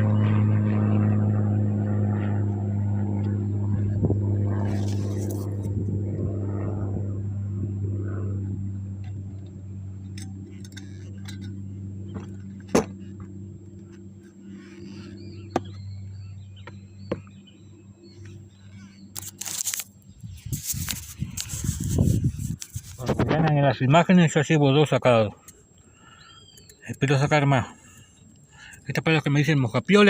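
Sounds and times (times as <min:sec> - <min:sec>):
engine droning: 0:00.0 - 0:30.0
brief rustle: 0:04.6 - 0:05.7, 0:19.1 - 0:23.3.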